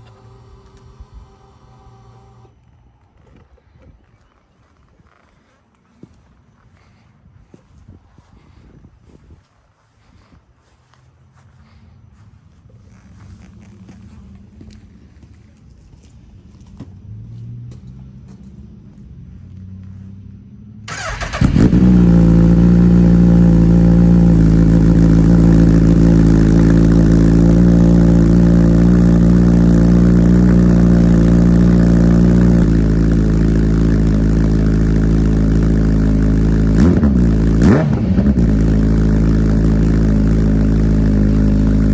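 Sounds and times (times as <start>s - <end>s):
motorcycle engine starting: 0.0s - 2.6s, 20.9s - 41.9s
motorcycle engine idling: 20.9s - 41.9s.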